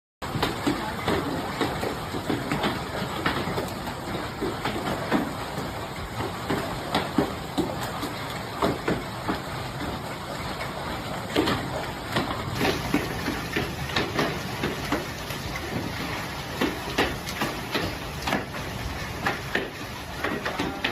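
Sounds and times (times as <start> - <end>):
heavy rain downpour: 0.2 - 20.9
hailstones striking hard surfaces: 12.5 - 20.9.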